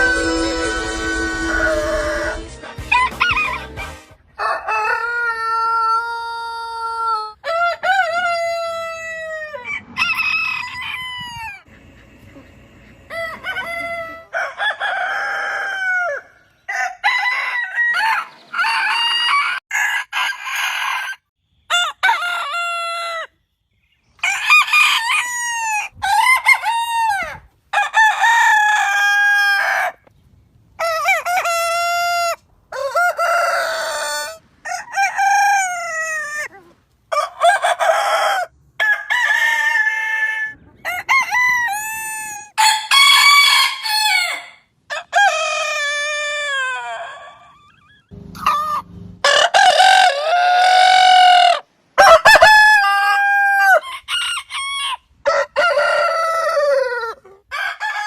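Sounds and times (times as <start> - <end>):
rooster crowing: 0.0 - 3.8, 4.4 - 11.7, 13.0 - 23.3, 24.2 - 30.0, 30.8 - 58.0
chicken clucking: 10.7 - 15.0, 46.6 - 50.8.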